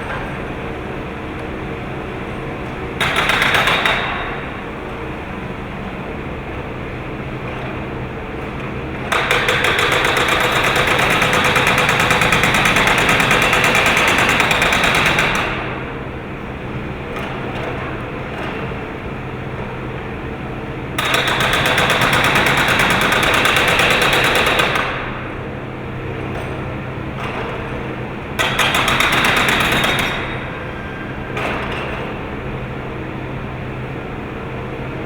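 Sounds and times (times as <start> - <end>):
hydraulic breaker hammering: 2.6 - 5.1, 7.3 - 19.2, 20.9 - 32.6.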